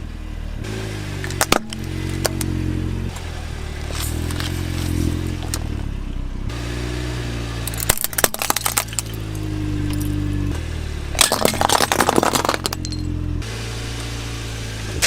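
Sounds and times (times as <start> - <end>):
plastic toys clattering: 11.2 - 13.1.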